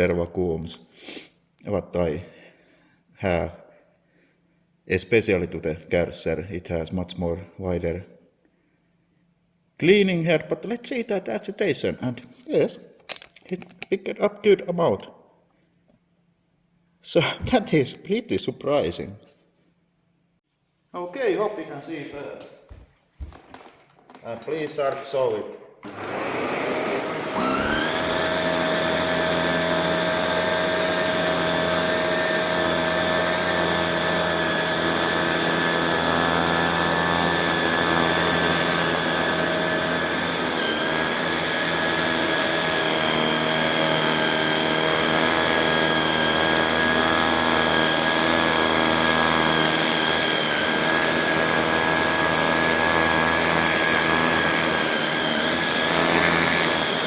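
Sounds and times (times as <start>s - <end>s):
vacuum cleaner motor whine: 22.7s - 57.0s.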